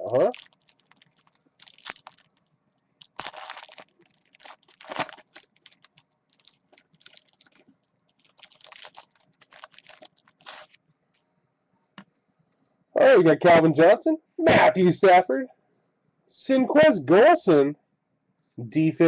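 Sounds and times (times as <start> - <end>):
wrapper crinkling and tearing: 0.0 - 10.8.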